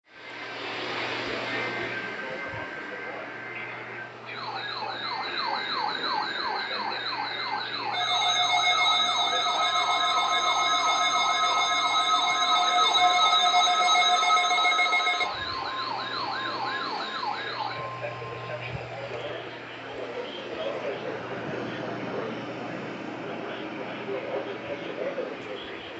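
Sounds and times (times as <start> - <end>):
steady electronic tones: 1.6 - 25.9
electronic siren yelping: 4.3 - 20.0.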